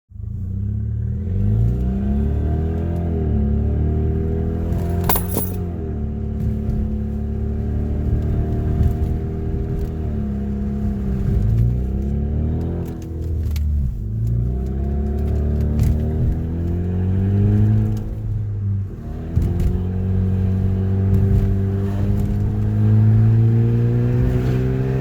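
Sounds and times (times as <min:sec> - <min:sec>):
metallic jingle of clicks: 0:05.0 - 0:05.6.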